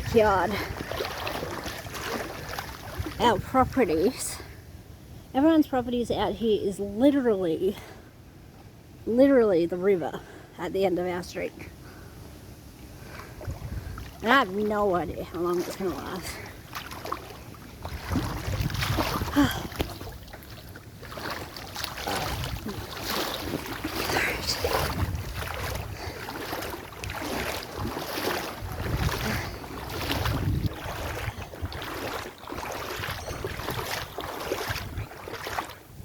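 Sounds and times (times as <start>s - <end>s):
footsteps wading through water: 0.0s - 4.5s, 12.9s - 36.0s.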